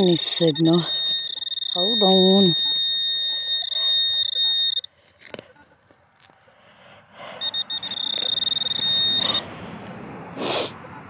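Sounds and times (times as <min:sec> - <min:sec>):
metal detector tone: 0:00.0 - 0:04.9, 0:07.4 - 0:09.5.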